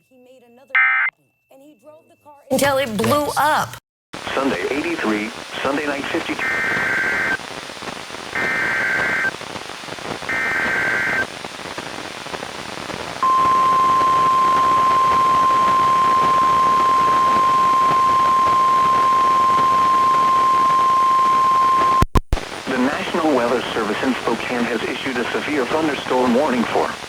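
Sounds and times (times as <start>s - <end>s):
radio static: 4.2s - 27.0s
steady warning alarm tone: 8.4s - 9.4s, 10.3s - 11.3s, 13.2s - 22.0s
warbling digital header tones: 13.2s - 22.0s.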